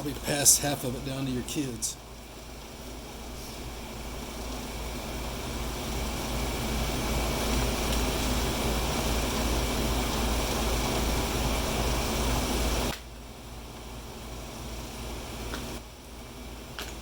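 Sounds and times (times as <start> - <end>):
whooshing machine noise: 0.0 - 17.0.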